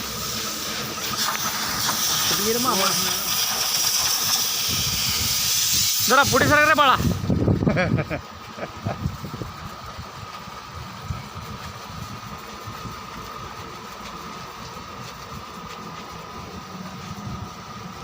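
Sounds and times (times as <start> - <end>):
motor running: 0.0 - 18.0.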